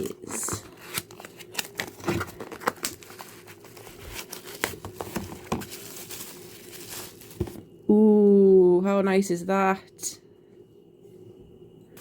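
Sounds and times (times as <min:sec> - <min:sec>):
packaging rustling and crinkling: 0:00.0 - 0:07.7.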